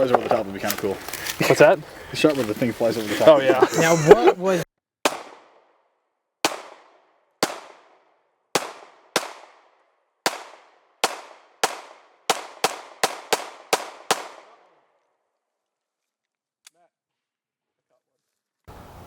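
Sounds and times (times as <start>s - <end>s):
rifle shots with echo: 6.4s - 14.7s.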